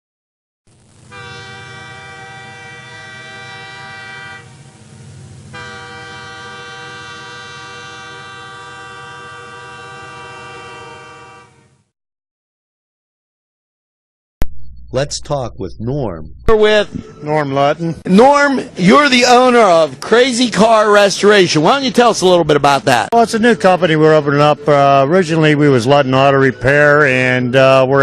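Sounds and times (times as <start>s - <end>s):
long steady horn blast: 0.9s - 11.9s
low rumble: 14.4s - 18.0s.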